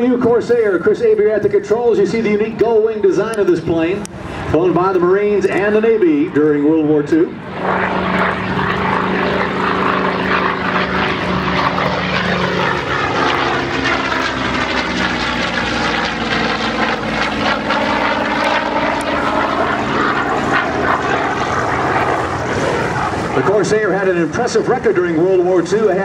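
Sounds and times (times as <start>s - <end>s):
radial aircraft engine at take-off power: 0.0s - 26.0s.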